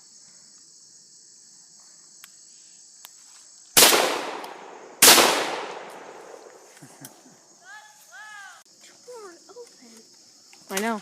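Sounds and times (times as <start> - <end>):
crickets chirring: 0.0 - 11.0
shotgun blast: 3.8 - 6.4.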